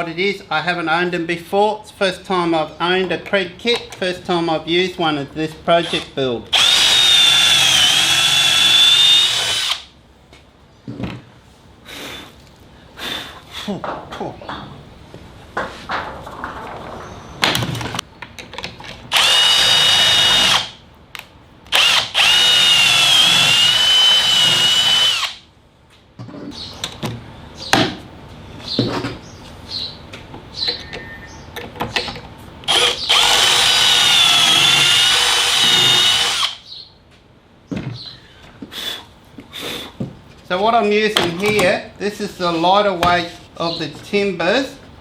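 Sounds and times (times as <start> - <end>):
power drill boring into wood: 5.8 - 9.9, 19.1 - 20.8, 21.7 - 25.4, 32.7 - 36.6.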